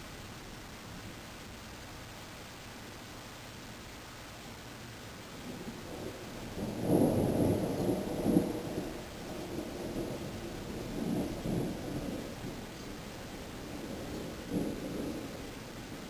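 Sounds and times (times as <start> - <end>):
low rumble of windstorm: 4.6 - 16.0.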